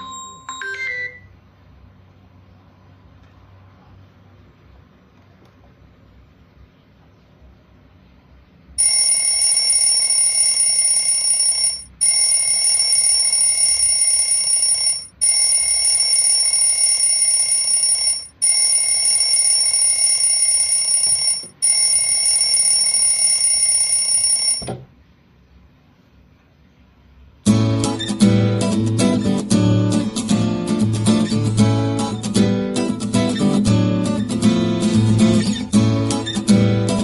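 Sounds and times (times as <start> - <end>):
alarm clock bell ringing: 8.8 - 24.7.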